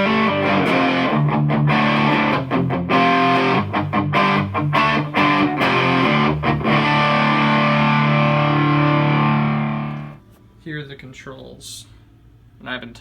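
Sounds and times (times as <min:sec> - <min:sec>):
distorted electric guitar riff: 0:00.0 - 0:10.2.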